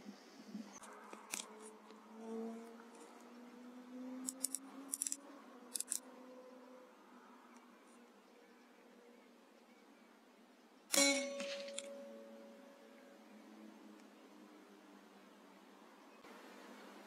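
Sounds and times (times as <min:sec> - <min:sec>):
sharp metallic clicks: 0:04.2 - 0:06.0, 0:10.9 - 0:12.0.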